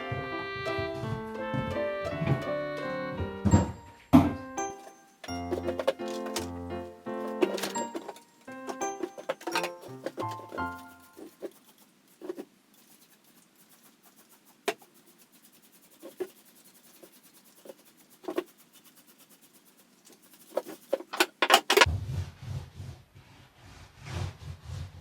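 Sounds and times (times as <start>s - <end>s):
objects knocking and clicking: 3.5s - 6.6s, 7.2s - 11.6s, 20.5s - 21.9s.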